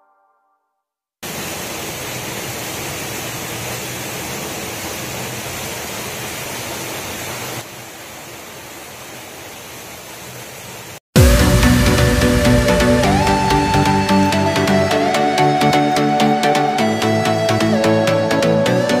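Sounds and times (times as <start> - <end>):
waterfall pouring: 1.2 - 15.1.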